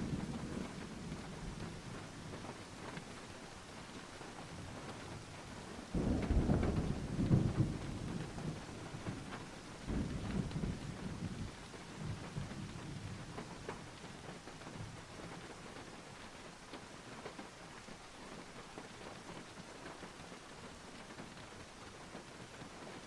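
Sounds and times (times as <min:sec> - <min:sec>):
thunder rumbling: 0:00.0 - 0:02.5, 0:05.9 - 0:13.2
rain on a tin roof: 0:00.0 - 0:23.0.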